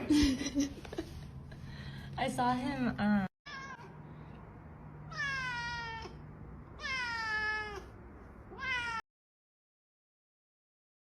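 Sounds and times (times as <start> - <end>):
cat meowing: 3.5 - 4.0, 5.1 - 9.0.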